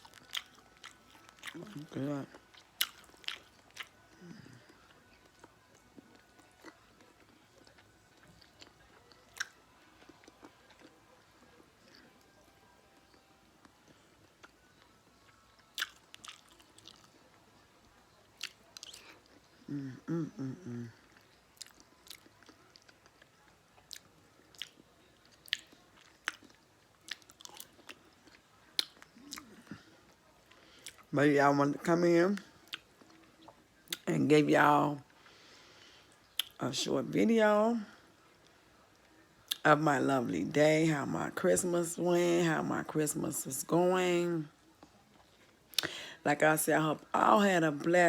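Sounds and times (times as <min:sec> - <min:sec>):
person chewing: 0:00.0 - 0:11.0, 0:13.9 - 0:14.6, 0:15.2 - 0:17.3, 0:18.4 - 0:29.9, 0:30.8 - 0:31.1.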